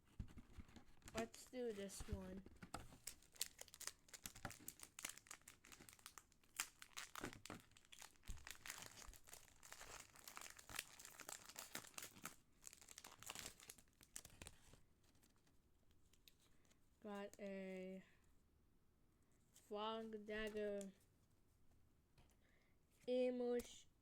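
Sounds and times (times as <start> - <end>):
wrapper crinkling and tearing: 3.0 - 15.4.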